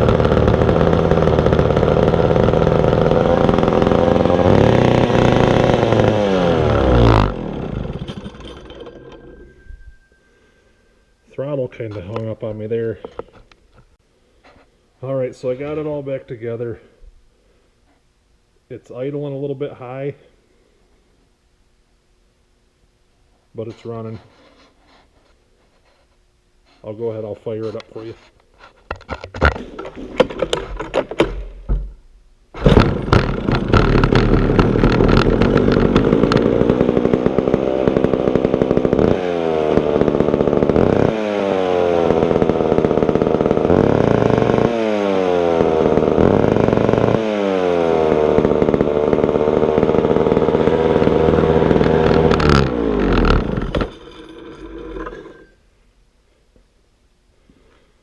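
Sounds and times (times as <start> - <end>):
chainsaw revving: 0.0 - 9.5, 32.6 - 55.5
starter cord pulls: 0.0 - 9.5, 28.9 - 31.8, 32.6 - 41.2, 48.0 - 55.5.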